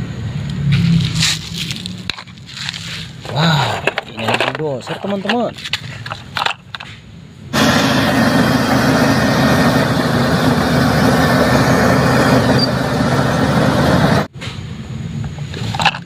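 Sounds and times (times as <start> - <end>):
heavy engine running: 7.5 - 16.0.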